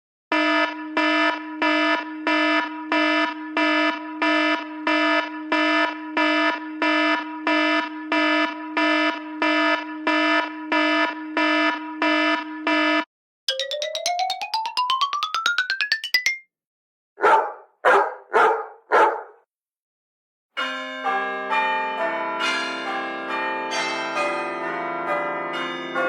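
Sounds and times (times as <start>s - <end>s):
buzzy electronic alarm tone: 0.4s - 13.0s.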